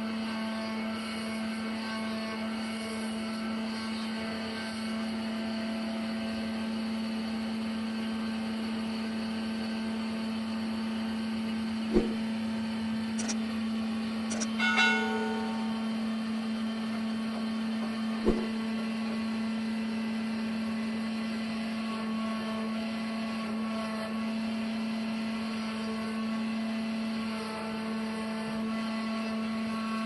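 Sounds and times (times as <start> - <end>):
machinery humming: 10.9 - 20.5
sharp knock: 11.9 - 12.2, 18.2 - 18.5.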